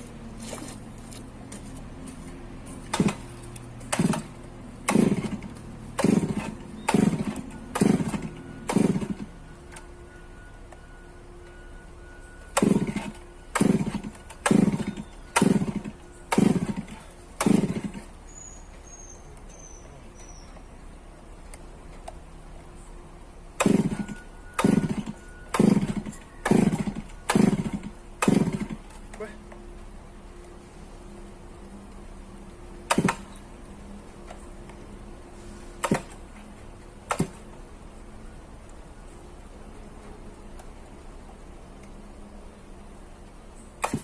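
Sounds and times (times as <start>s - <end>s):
chainsaw engine revving: 2.9s - 9.3s, 12.6s - 18.1s, 23.6s - 28.9s.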